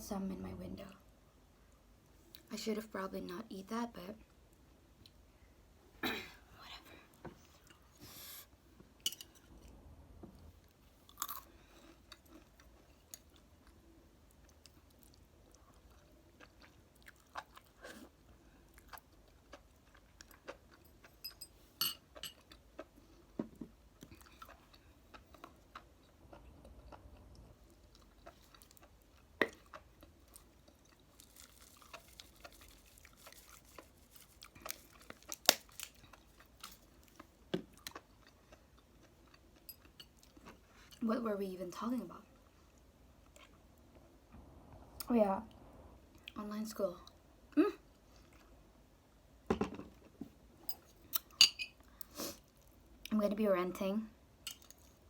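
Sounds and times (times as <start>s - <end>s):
person chewing: 11.0s - 21.3s, 23.9s - 41.0s.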